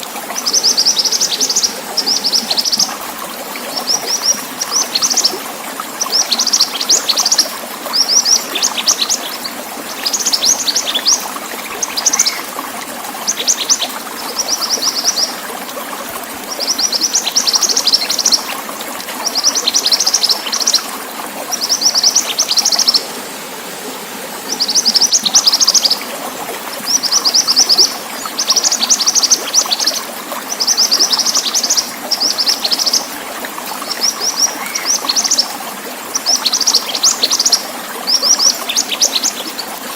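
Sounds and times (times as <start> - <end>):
running water hiss: 0.0 - 39.9
songbird chattering: 8.0 - 12.5, 33.9 - 35.4.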